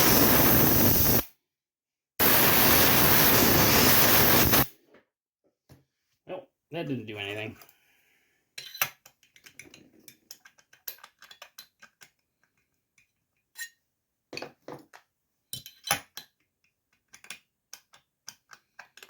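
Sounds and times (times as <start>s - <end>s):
metal tools clinking on workbench: 8.6s - 9.0s, 15.5s - 16.3s.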